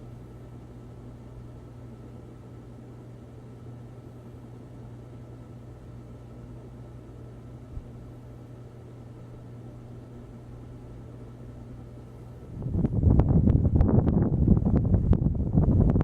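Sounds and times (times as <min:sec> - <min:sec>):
ceiling fan motor humming: 0:00.0 - 0:16.0
wind buffeting microphone: 0:12.6 - 0:16.0.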